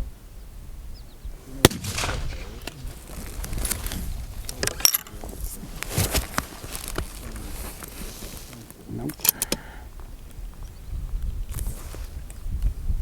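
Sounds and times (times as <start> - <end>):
rifle shot: 1.6 - 4.2.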